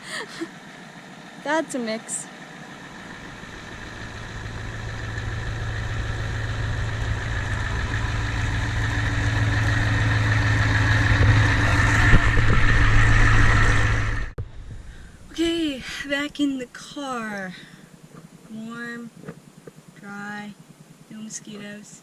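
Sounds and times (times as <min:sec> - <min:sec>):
diesel truck engine droning: 0:00.0 - 0:14.8.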